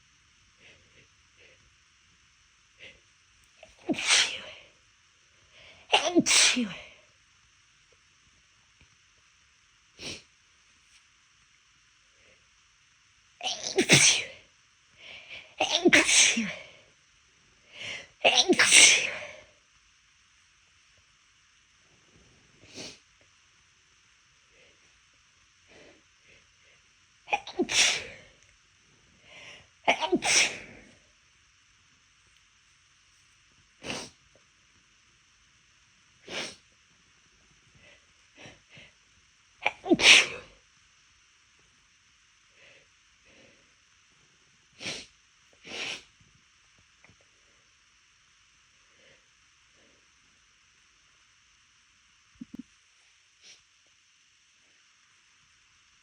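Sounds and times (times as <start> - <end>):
woman sneezing: 3.6 - 4.6, 5.9 - 6.9, 13.4 - 14.4, 15.6 - 16.6, 18.3 - 19.4, 27.3 - 28.2, 29.9 - 30.7, 39.6 - 40.5.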